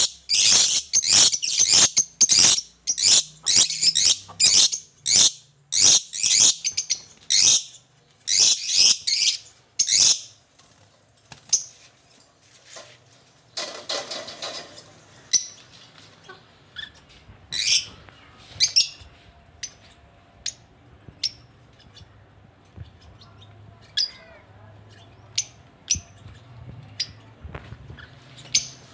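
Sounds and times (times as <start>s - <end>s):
rustle in bird cage: 6.6s - 19.9s, 22.7s - 28.9s.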